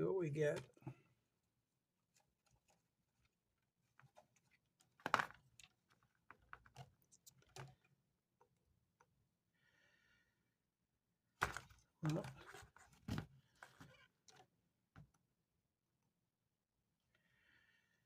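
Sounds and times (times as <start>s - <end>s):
small handling clicks and knocks: 2.0s - 9.2s.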